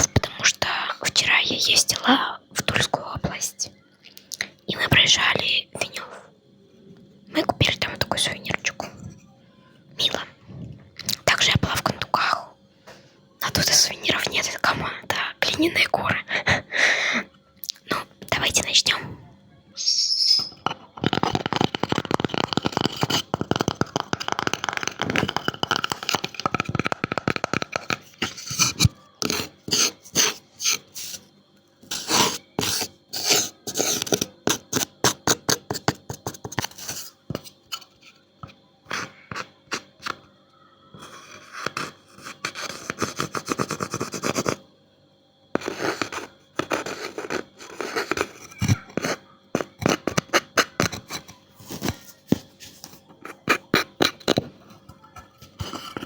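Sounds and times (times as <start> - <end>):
scratching and rubbing on wood: 20.6 - 31.2.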